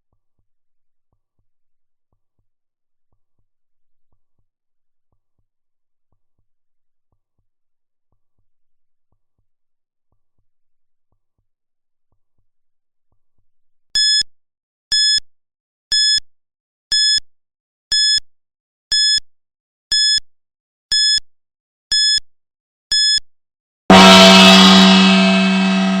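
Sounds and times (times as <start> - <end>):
short high-pitched timer beeps: 14.0 - 14.2, 14.9 - 15.2, 15.9 - 16.2, 16.9 - 17.2, 17.9 - 18.2, 18.9 - 19.2, 19.9 - 20.2, 20.9 - 21.2, 21.9 - 22.2, 22.9 - 23.2
gong ringing: 23.9 - 26.0.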